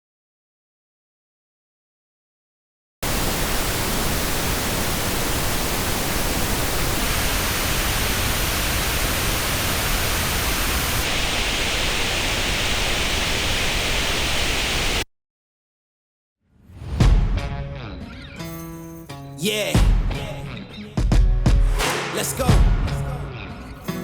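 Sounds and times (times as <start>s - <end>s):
pink noise hiss: 3.0s - 15.0s.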